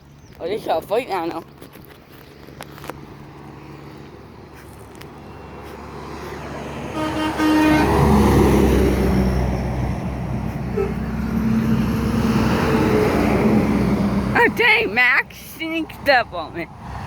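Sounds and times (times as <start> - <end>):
truck passing on road: 0.7 - 17.0
truck horn toot: 6.9 - 8.6, 10.7 - 11.2.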